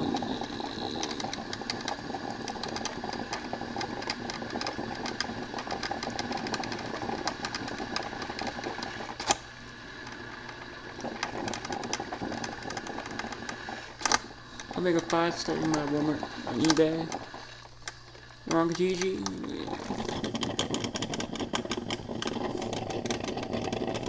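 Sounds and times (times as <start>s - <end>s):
coffee maker sputtering and crackling: 0.0s - 24.0s.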